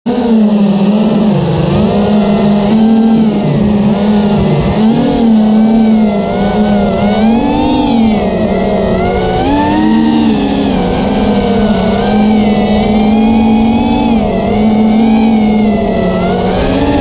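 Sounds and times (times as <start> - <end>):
quadcopter motors whining: 0.1 - 17.0.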